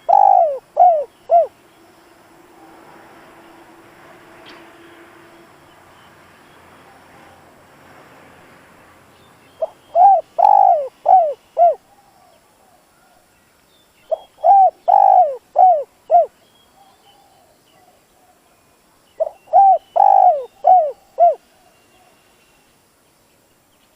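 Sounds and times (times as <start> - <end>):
dove cooing: 0.0 - 1.6, 9.6 - 12.8, 14.1 - 16.3, 19.2 - 21.7.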